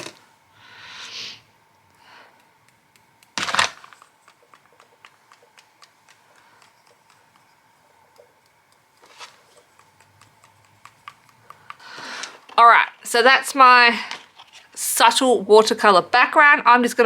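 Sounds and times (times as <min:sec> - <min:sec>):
paintbrush tapping ticks: 0:02.4 - 0:03.4, 0:04.1 - 0:12.0.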